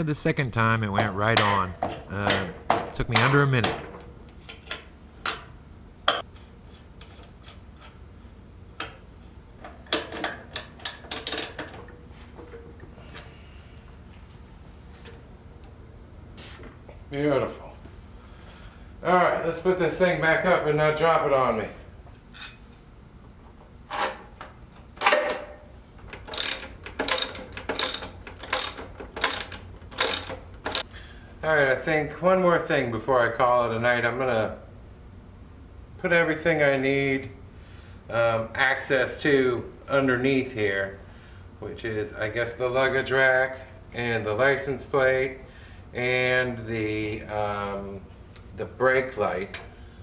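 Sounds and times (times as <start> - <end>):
tools clicking and knocking: 25.0 - 30.9.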